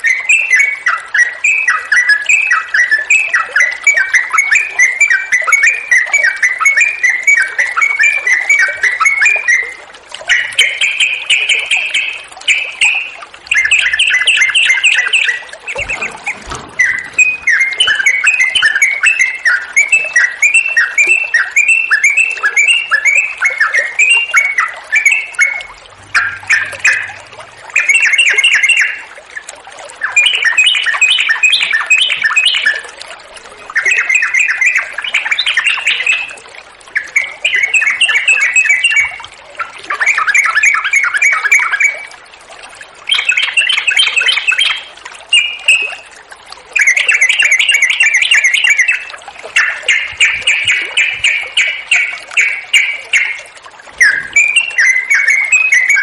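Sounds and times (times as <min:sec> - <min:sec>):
bird chattering song: 0:10.3 - 0:32.8, 0:46.8 - 0:53.4, 0:54.0 - 0:56.0.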